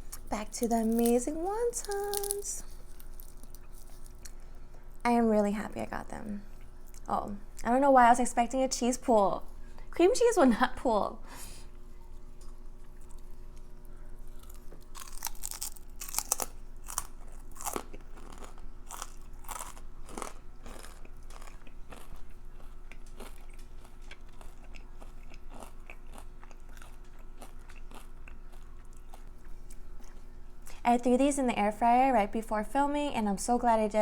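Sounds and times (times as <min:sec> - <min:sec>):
crunching and chewing food: 0:00.0 - 0:05.1, 0:06.4 - 0:07.6, 0:11.6 - 0:30.8.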